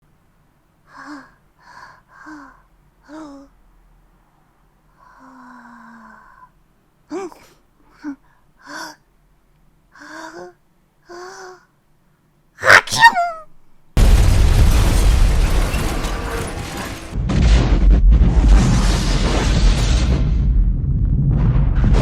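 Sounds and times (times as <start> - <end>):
woman gasping before sneezing: 7.1 - 9.0, 12.6 - 13.4.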